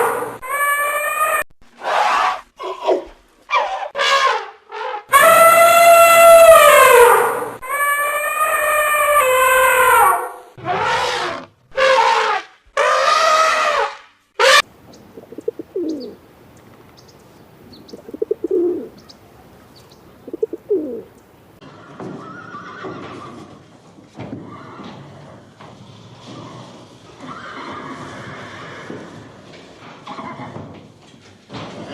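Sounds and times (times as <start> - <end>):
loud animal calls with falling tones: 0.0 - 16.2
pigeons cooing softly: 14.9 - 21.3
faint noisy rustle: 23.1 - 31.9.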